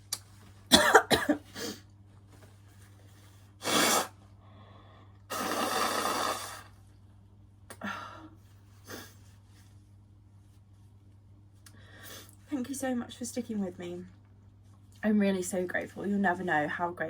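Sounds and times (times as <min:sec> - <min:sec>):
loud sneeze: 0:03.6 - 0:04.2.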